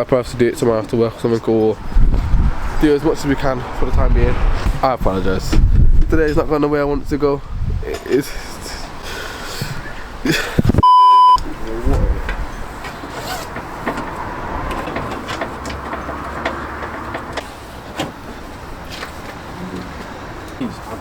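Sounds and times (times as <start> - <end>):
censor bleep: 10.8 - 11.5
light clicks and knocks: 12.3 - 21.0.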